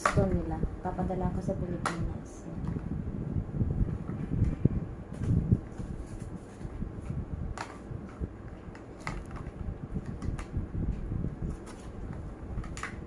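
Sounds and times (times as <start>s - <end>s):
low steady rumble: 0.0s - 13.0s.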